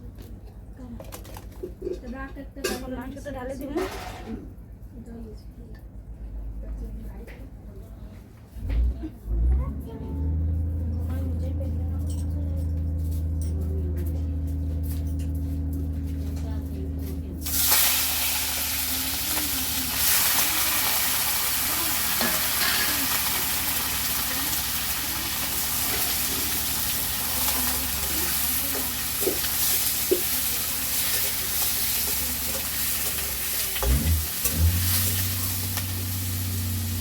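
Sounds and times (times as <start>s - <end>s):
chicken sizzling in hot oil: 17.4s - 37.0s
spatula scraping a pan: 20.0s - 35.6s.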